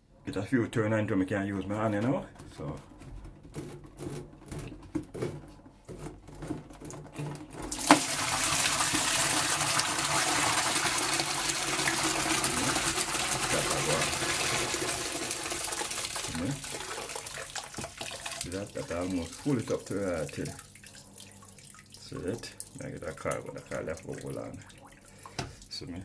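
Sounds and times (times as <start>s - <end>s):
water pouring from drain pipe: 7.6s - 25.8s.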